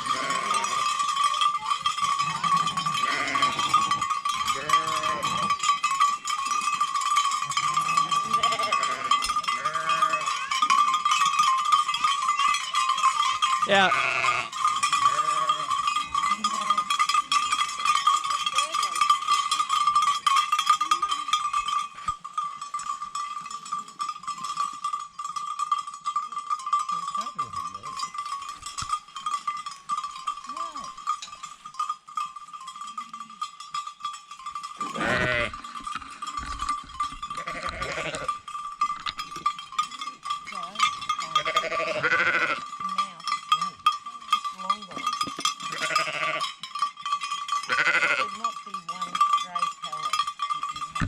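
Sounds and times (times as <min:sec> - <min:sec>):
sheep bleating: 0:00.0 - 0:00.8, 0:02.2 - 0:05.5, 0:07.7 - 0:10.5, 0:13.6 - 0:15.8, 0:34.8 - 0:36.3, 0:37.3 - 0:38.4, 0:41.3 - 0:42.6, 0:45.7 - 0:46.4, 0:47.7 - 0:48.4
sheep bells clanking: 0:00.0 - 0:51.0.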